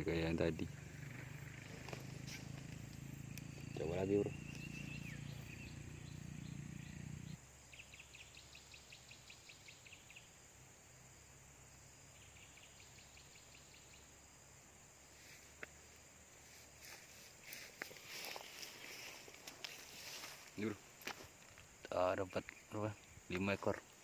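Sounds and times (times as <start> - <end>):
rapid high animal chirps: 0.7 - 10.3.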